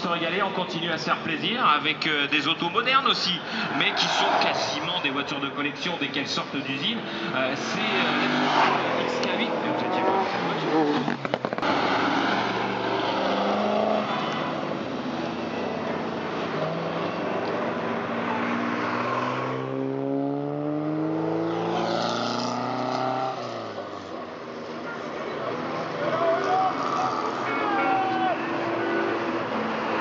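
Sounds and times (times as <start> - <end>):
car engine accelerating past: 8.0 - 14.6, 16.2 - 24.0.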